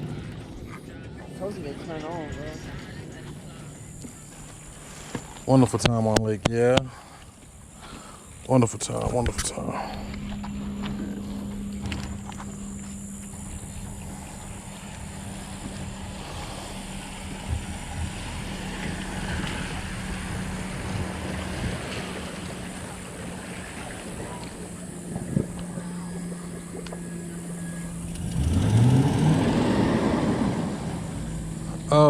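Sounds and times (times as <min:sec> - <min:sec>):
boat motor humming: 0:00.0 - 0:32.0
tone rising in pitch: 0:09.0 - 0:32.0.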